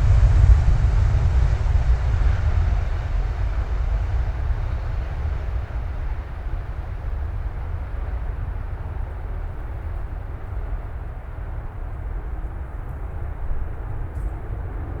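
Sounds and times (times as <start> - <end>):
distant jet engine rumble: 0.0 - 15.0.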